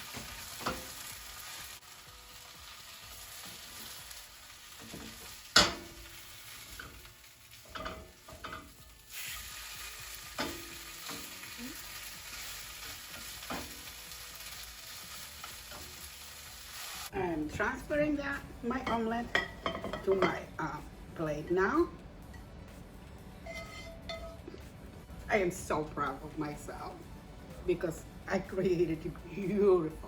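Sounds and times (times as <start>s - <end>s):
omelette sizzling in oil: 0.0s - 17.1s
spatula knocking and scraping pan: 23.5s - 24.4s.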